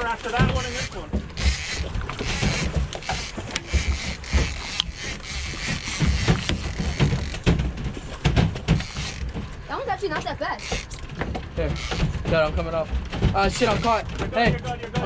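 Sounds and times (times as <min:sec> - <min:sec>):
fishing reel clicking: 0:00.0 - 0:09.4, 0:10.6 - 0:12.2, 0:13.4 - 0:14.1
gear knocks: 0:00.0 - 0:14.5.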